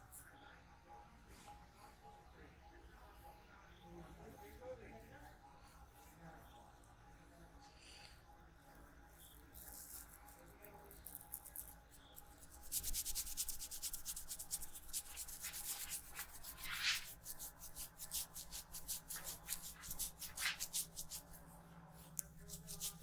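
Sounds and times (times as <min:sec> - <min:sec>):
hands rubbing hair and scalp: 0:11.1 - 0:23.0.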